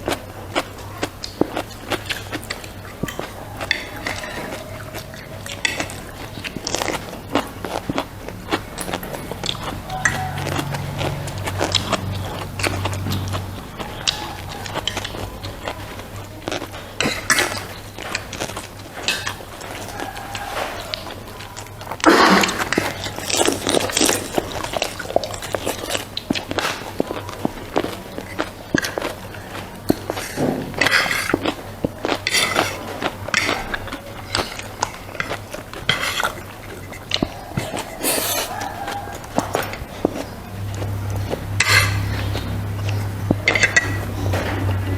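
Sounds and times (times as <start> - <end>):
biting and chewing: 0.0 - 44.9
cutlery clinking on a dish: 2.0 - 7.0, 14.0 - 44.9.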